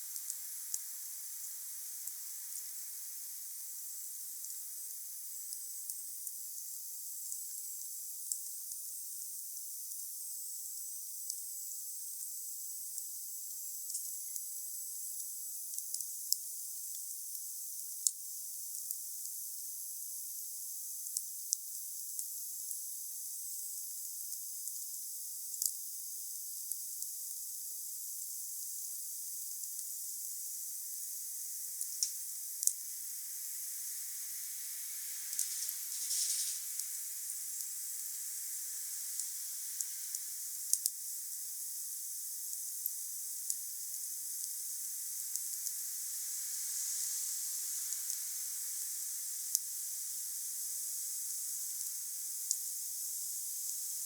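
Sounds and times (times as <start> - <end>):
fire hissing: 30.9 - 41.6, 44.0 - 52.4
fire crackling and popping: 31.8 - 32.9, 34.4 - 41.0.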